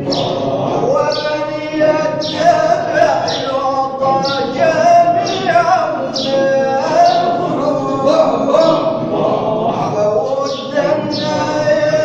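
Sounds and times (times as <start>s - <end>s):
group rhythmic chanting: 0.0s - 12.0s
man singing melodic line: 0.0s - 12.0s.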